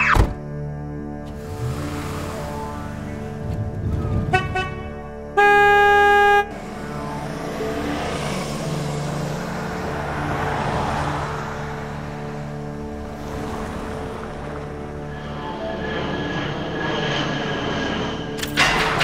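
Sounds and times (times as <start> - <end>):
vehicle road noise: 0.0 - 19.0
car horn blasts: 4.2 - 6.6.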